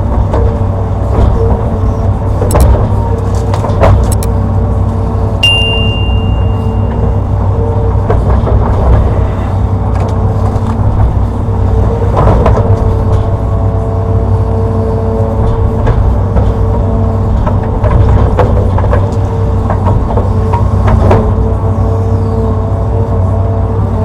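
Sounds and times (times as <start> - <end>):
diesel engine rumble: 0.0 - 24.0
excavator digging knocks: 11.8 - 13.4, 15.4 - 21.6.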